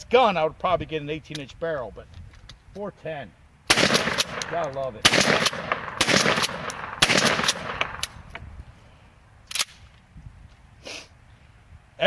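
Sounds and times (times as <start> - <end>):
shotgun shots with echo: 3.7 - 8.2.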